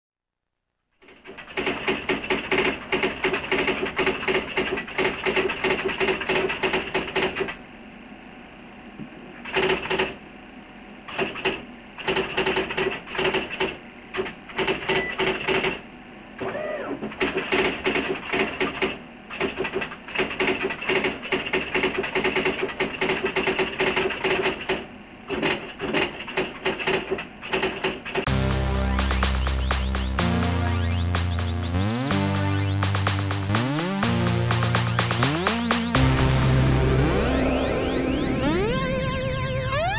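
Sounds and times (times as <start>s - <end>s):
typewriter whirring: 1.0s - 7.6s, 17.0s - 28.3s.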